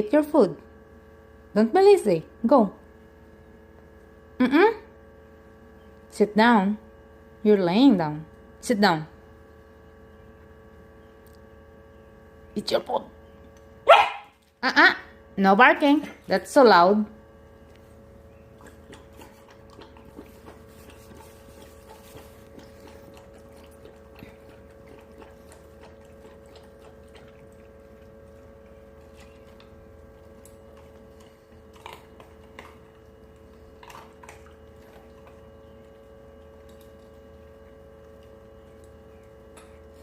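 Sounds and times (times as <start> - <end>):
steady hum: 0.0 - 40.0
dog chewing and crunching food: 17.2 - 40.0.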